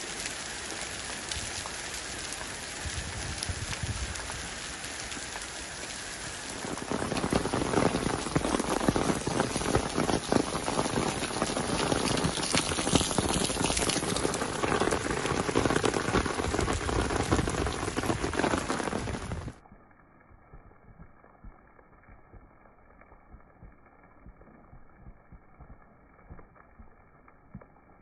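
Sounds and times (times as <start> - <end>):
rain falling: 0.0 - 19.7.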